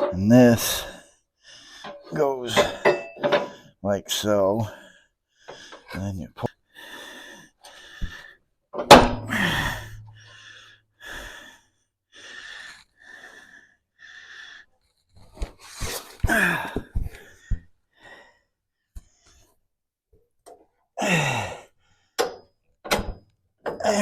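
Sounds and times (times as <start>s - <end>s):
sharp metal knocks: 8.8s - 10.1s
man breathing hard and grunting: 9.2s - 14.7s, 15.8s - 18.5s, 21.0s - 21.9s.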